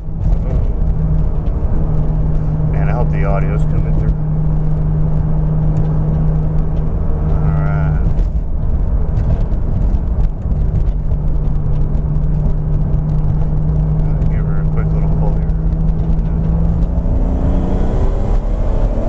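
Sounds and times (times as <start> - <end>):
car engine droning: 0.0 - 19.0.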